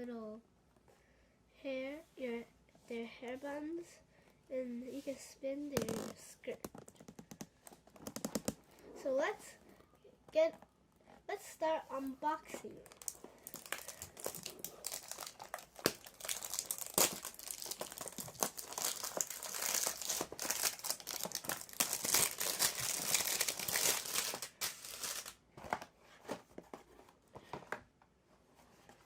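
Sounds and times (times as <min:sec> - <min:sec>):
packaging tearing and crinkling: 0:12.8 - 0:25.4.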